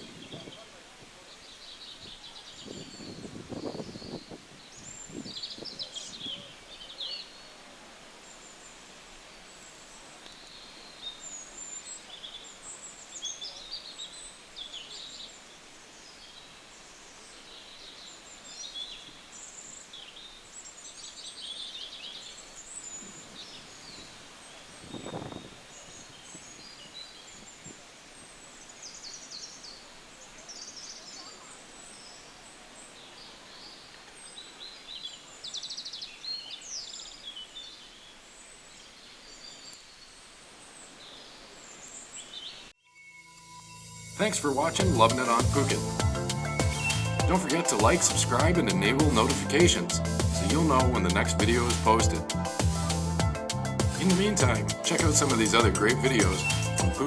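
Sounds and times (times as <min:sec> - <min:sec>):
outdoor background noise: 0:00.0 - 0:57.0
birds chirping and trilling: 0:43.5 - 0:52.7, 0:53.9 - 0:57.0.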